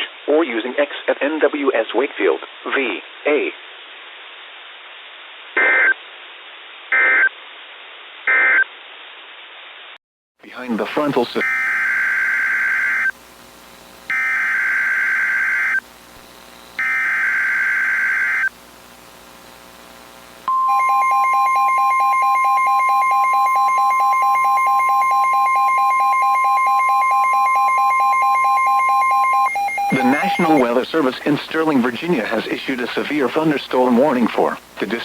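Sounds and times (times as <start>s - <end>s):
buzzing data tone bursts: 14.1s - 15.8s, 16.8s - 18.5s, 23.5s - 35.0s
two-tone attention signal: 20.5s - 30.8s.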